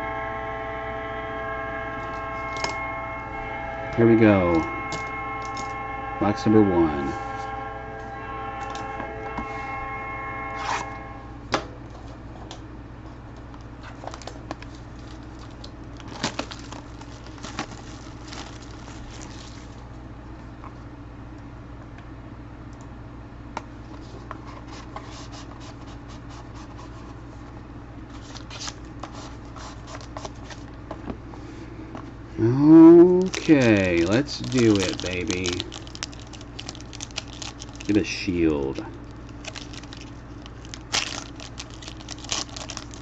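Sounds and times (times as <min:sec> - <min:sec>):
steady low hum: 0:00.0 - 0:43.0
cardboard and wrapping tearing: 0:13.8 - 0:19.8, 0:28.2 - 0:30.6, 0:33.2 - 0:38.1, 0:39.1 - 0:43.0.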